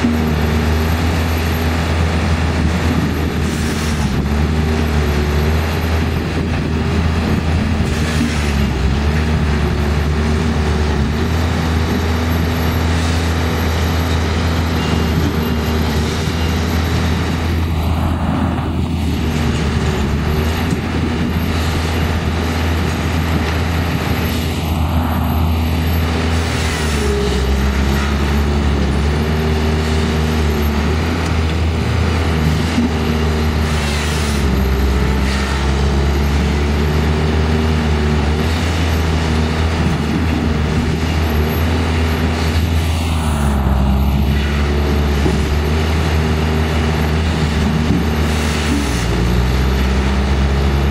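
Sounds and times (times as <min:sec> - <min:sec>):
machine engines running: 0:00.0 - 0:50.9.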